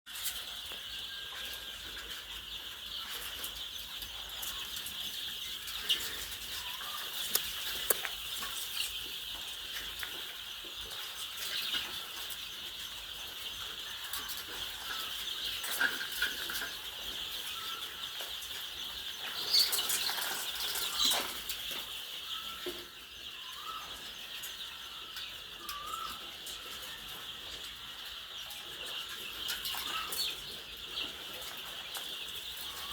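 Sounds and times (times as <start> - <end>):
chicken clucks: 0.1 - 32.9
chickens calling: 0.1 - 32.9.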